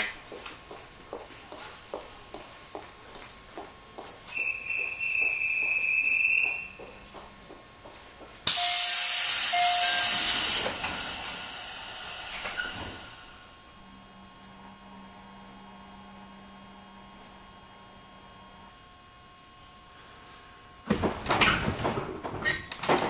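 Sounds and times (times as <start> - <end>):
train doors closing: 8.4 - 13.5
steady high beep: 8.5 - 10.6
compressed air hiss: 8.5 - 13.6.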